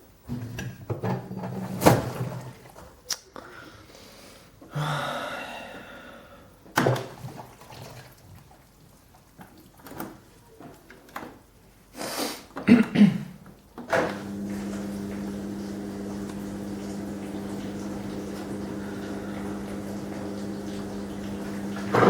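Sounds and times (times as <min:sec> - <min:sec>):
washing machine knocks and clunks: 0:00.3 - 0:02.6, 0:13.9 - 0:22.0
water running: 0:01.3 - 0:03.0, 0:06.8 - 0:11.7, 0:13.4 - 0:22.0
drain pump electric hum: 0:06.8 - 0:11.2, 0:12.7 - 0:22.0.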